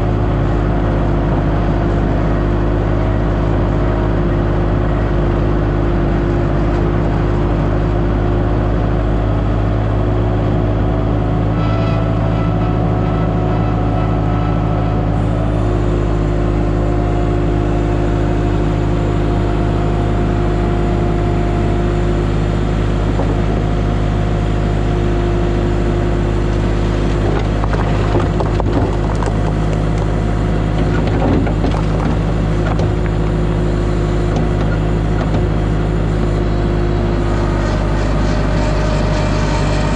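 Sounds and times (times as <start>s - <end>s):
diesel engine running: 0.0s - 39.9s
knocks and clunks: 23.0s - 23.7s, 27.0s - 36.4s.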